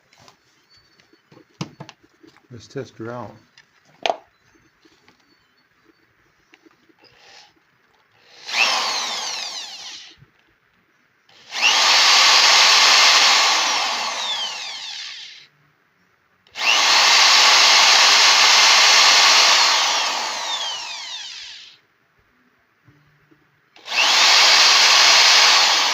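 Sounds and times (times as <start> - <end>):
electric drill motor whining: 6.6 - 7.6, 8.2 - 10.2, 11.3 - 15.5, 16.5 - 21.8, 23.8 - 25.9.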